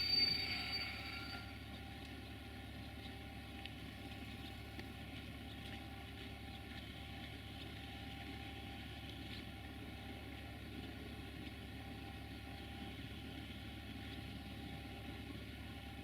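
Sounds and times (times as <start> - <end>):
faint held tone: 0.0 - 1.8
train passing on track: 0.0 - 1.8.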